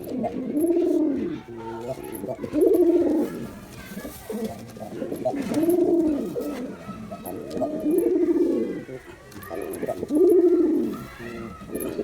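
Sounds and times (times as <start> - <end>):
pigeon cooing: 0.0 - 12.0.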